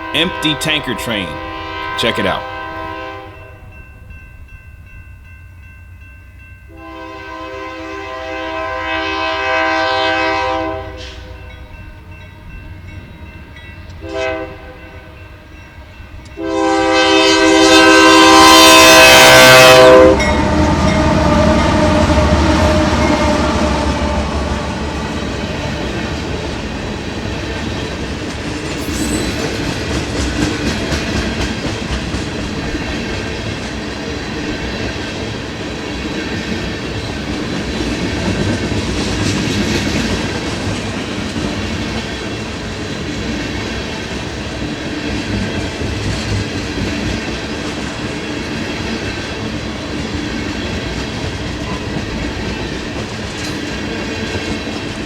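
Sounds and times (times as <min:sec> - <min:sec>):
train wheels rumbling on rail: 0:16.2 - 0:55.0
thin high tones: 0:28.8 - 0:29.6.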